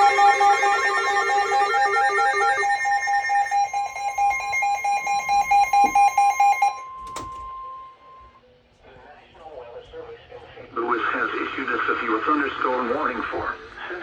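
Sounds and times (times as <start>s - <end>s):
stepped electronic melody: 0.0s - 7.2s
fast electronic beeping alarm: 0.0s - 8.3s
steady single warning tone: 0.0s - 8.4s.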